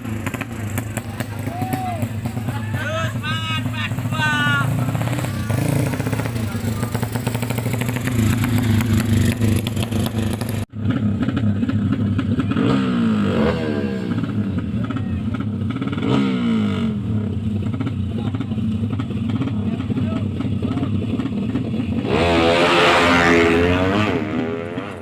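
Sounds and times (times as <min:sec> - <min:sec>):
motorcycle engines revving: 0:00.0 - 0:25.0.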